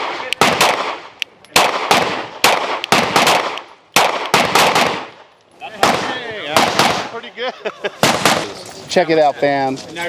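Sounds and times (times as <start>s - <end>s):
gunshots with echo: 0.0s - 5.2s, 5.8s - 7.2s, 8.0s - 8.6s.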